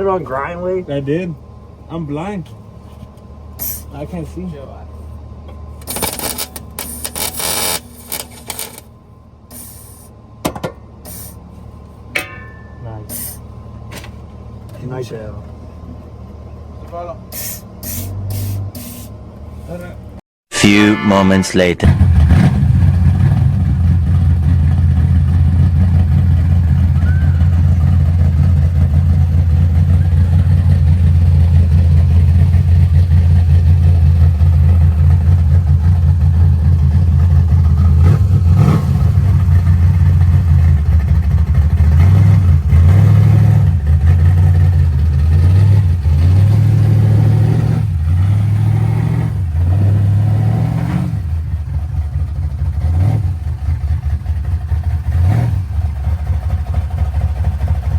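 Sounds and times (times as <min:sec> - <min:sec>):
car engine revving: 0:21.8 - 0:51.3.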